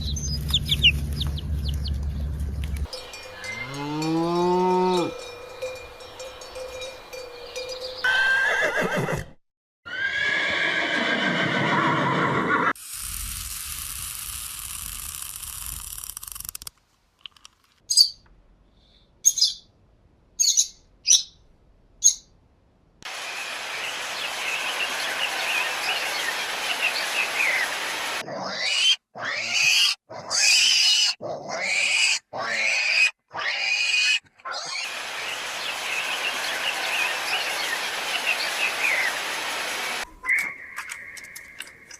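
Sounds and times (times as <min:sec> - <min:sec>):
bird-like chirping: 0:00.0 - 0:03.8, 0:17.9 - 0:18.2, 0:19.2 - 0:19.7, 0:20.4 - 0:22.3, 0:40.1 - 0:41.9
drawn-out falling animal call: 0:00.0 - 0:12.8.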